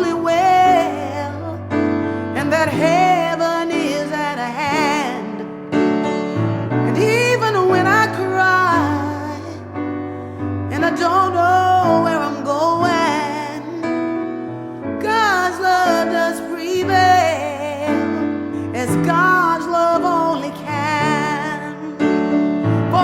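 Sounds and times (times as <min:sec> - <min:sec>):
woman singing with vibrato: 0:00.0 - 0:01.7, 0:02.3 - 0:05.6, 0:06.8 - 0:09.7, 0:10.7 - 0:13.9, 0:15.0 - 0:23.0
piano chords: 0:00.0 - 0:23.0.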